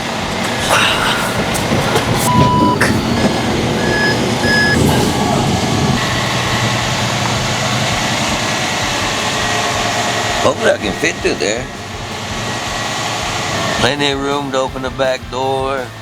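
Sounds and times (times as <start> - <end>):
truck engine running: 0.0 - 16.0
truck reversing alarm beeps: 0.0 - 16.0.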